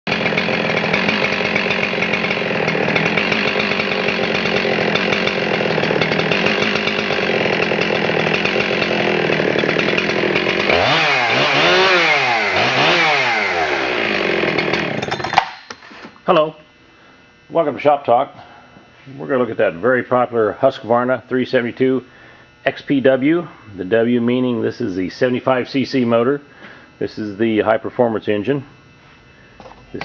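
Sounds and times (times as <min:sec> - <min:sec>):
chainsaw engine running and revving: 0:00.1 - 0:15.5.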